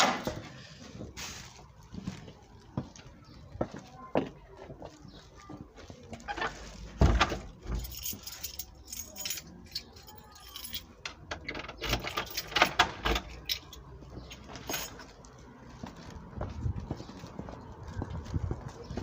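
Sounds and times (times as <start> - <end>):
metal objects jangling and clinking: 7.6 - 11.0, 11.7 - 15.1.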